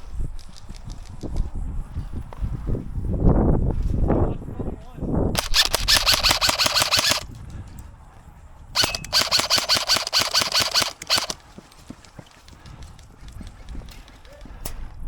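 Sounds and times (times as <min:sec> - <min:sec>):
airsoft rifle automatic fire: 0:05.4 - 0:07.3, 0:08.8 - 0:11.4.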